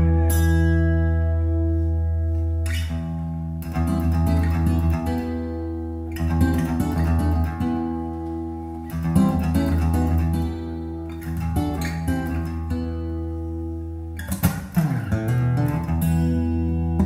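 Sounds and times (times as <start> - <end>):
steady bass line: 0.0 - 7.2
strummed and plucked guitar: 0.0 - 17.0.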